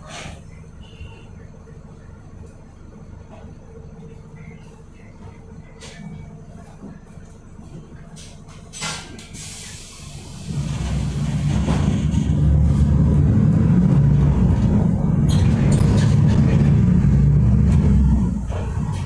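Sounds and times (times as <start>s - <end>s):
bus engine droning: 8.1s - 19.0s
air brakes hissing: 9.2s - 12.8s.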